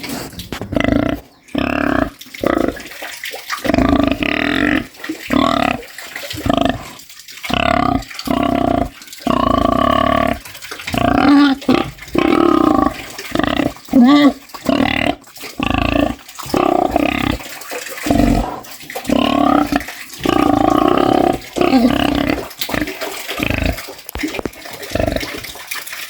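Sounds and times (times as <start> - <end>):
pig grunting: 0.0 - 25.6.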